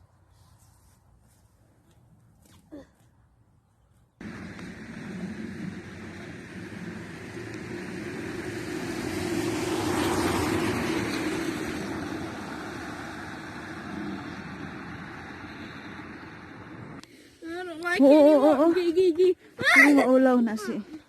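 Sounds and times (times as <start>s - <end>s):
road vehicle passing by: 4.2s - 17.0s.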